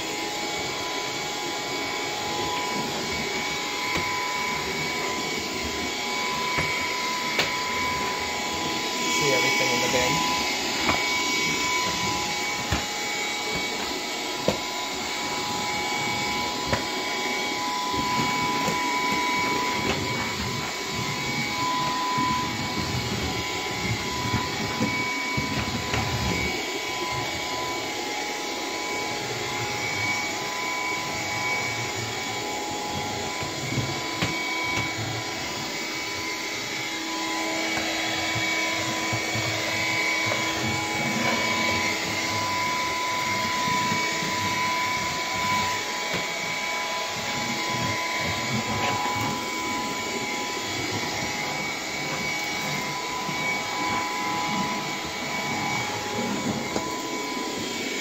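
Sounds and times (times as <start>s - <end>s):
stick vacuum running: 0.0s - 58.0s.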